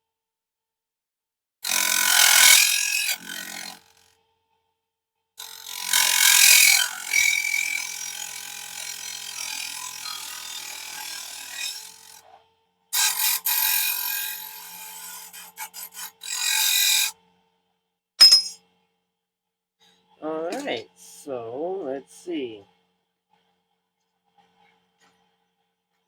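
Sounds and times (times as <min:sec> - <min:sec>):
table saw cutting aluminum: 0:01.7 - 0:03.8, 0:05.4 - 0:12.2, 0:13.0 - 0:17.1.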